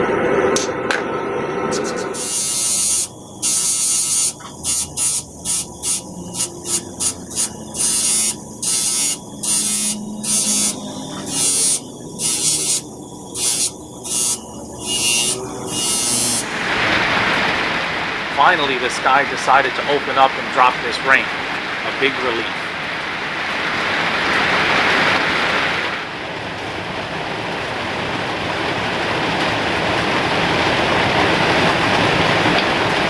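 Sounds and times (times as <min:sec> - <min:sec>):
faint steady hum: 0:00.0 - 0:23.4
continuous hiss: 0:01.6 - 0:26.8
abrasive grinding steel: 0:01.7 - 0:17.5.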